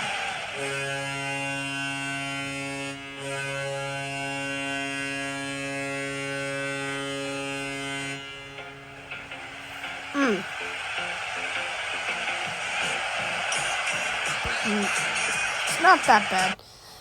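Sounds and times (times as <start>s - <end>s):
deep multi-tone horn blast: 0.6s - 8.9s.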